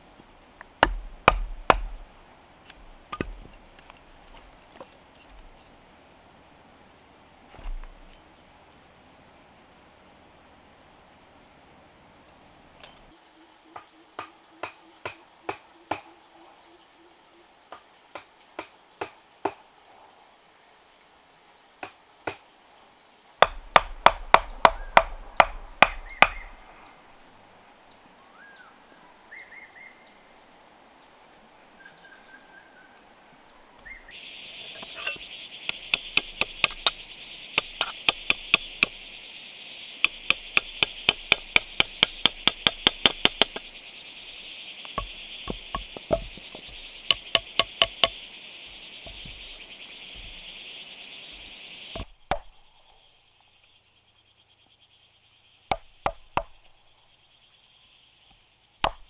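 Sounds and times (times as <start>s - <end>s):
insects buzzing: 12.8s - 27.8s, 33.8s - 59.0s
hammer strikes: 34.8s - 37.0s, 37.6s - 39.0s, 40.0s - 43.6s, 45.0s - 48.2s.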